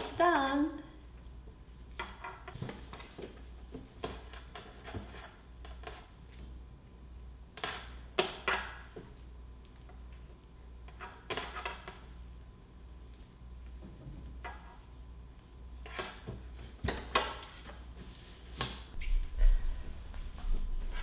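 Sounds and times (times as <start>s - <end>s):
low steady hum: 0.0s - 4.4s, 11.9s - 21.0s.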